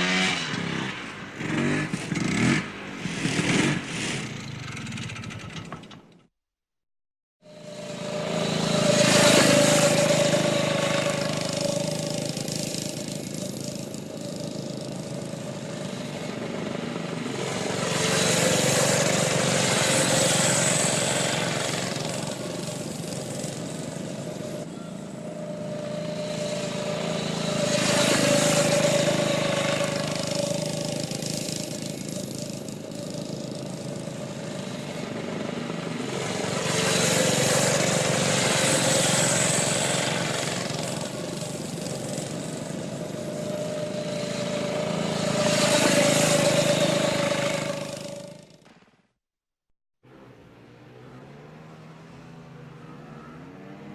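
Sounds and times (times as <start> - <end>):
atv engine running: 0.0 - 6.0, 7.5 - 48.8.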